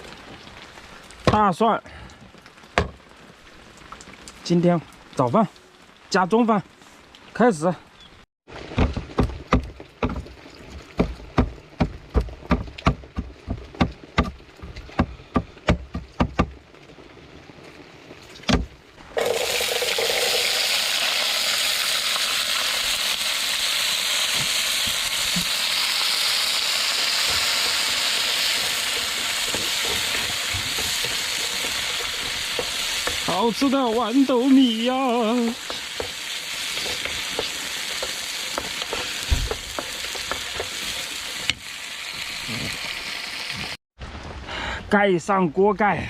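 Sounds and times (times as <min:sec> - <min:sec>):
food sizzling in a wok: 0:19.0 - 0:43.8.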